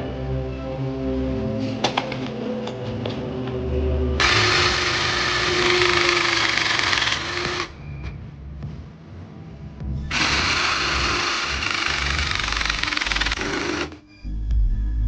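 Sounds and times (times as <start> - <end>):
power tool running: 4.2 - 7.7, 10.1 - 14.0.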